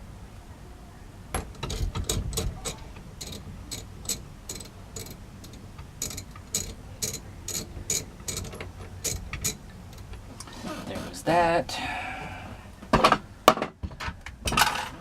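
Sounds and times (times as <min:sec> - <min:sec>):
hand ratchet clicking: 0:01.5 - 0:10.5.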